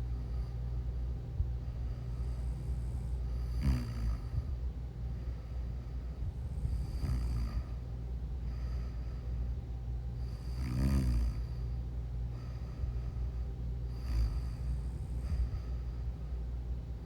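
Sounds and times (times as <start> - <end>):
steady low hum: 0.0 - 17.0
person snoring: 2.3 - 4.4, 6.5 - 7.7, 10.2 - 11.5, 13.9 - 15.5.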